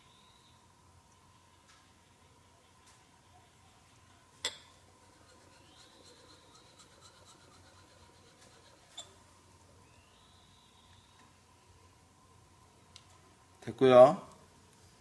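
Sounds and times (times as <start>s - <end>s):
steel scratching on stone: 4.9s - 9.2s.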